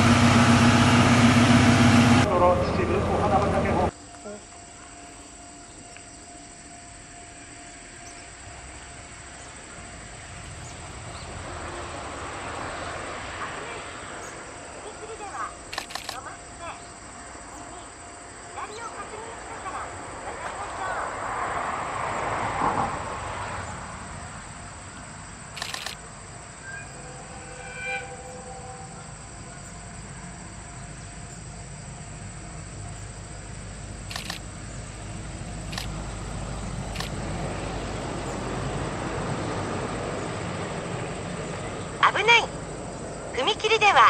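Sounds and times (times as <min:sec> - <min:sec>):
train rumbling on rails: 0:00.0 - 0:05.0, 0:06.2 - 0:44.0
camera shutter clicks: 0:15.7 - 0:16.2, 0:25.6 - 0:26.0, 0:34.1 - 0:34.4, 0:35.7 - 0:35.9, 0:36.9 - 0:37.2.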